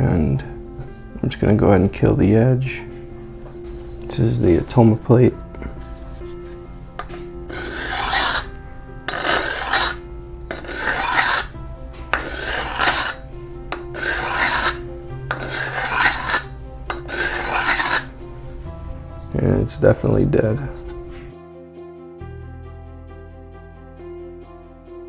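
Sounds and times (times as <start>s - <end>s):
knife edge scraping on diamond plate: 7.0s - 18.3s.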